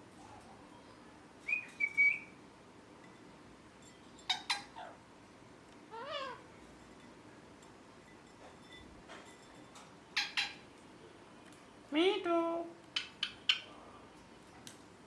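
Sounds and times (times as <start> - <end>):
parrot chirps: 1.5 - 2.3, 4.2 - 5.0, 5.9 - 6.5, 10.1 - 10.7, 12.9 - 13.7
parrot whistle: 1.5 - 2.3
parrot warbling call: 5.9 - 6.5.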